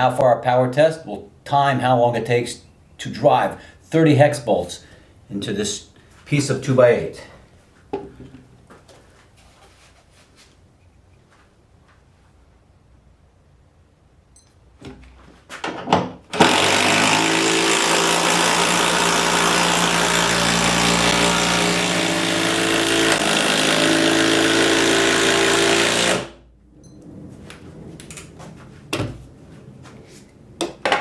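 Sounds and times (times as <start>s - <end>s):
impact driver hammering bolt into wood: 16.3s - 26.3s
handling knocks: 28.9s - 29.4s.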